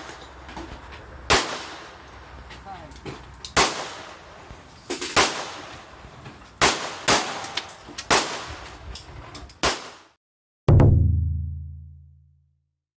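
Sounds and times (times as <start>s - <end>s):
loud gunshots: 1.3s - 1.8s, 3.6s - 4.1s, 6.6s - 7.5s, 8.1s - 8.5s
distant gunshots: 1.3s - 1.9s
music with deep drum hit: 10.7s - 12.3s.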